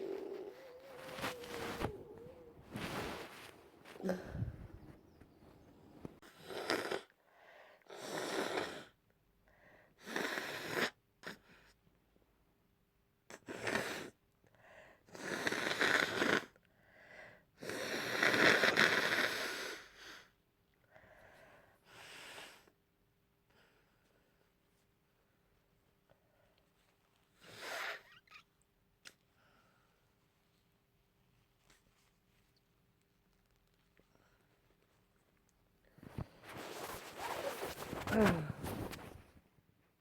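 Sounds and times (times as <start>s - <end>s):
person blowing nose: 0.0s - 4.4s, 27.4s - 28.2s, 36.2s - 39.2s.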